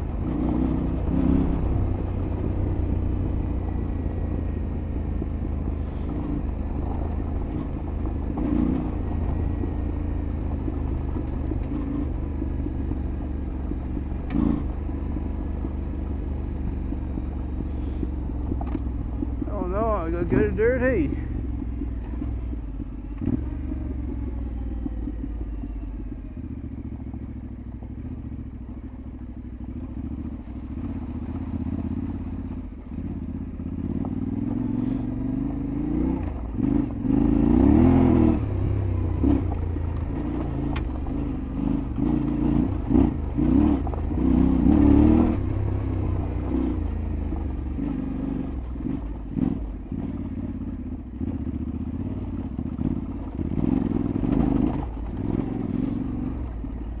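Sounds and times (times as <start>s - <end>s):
motorcycle engine revving: 0.0s - 57.0s
clattering over rough ground: 5.8s - 9.7s.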